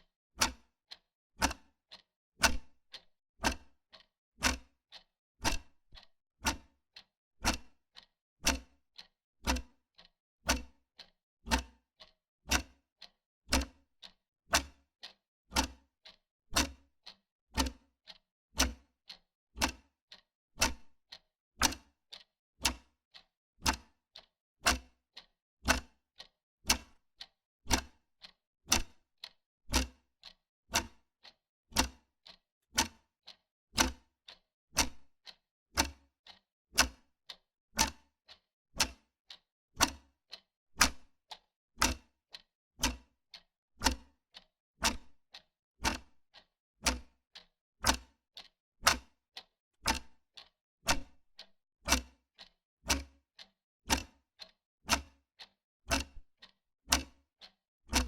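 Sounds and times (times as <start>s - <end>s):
wall clock ticking: 1.4s - 2.6s, 20.6s - 20.9s, 21.6s - 24.0s, 24.6s - 27.0s, 31.8s - 35.1s, 35.8s - 43.1s, 43.8s - 44.1s, 44.8s - 45.2s, 45.8s - 47.2s, 47.9s - 53.0s, 53.9s - 58.0s.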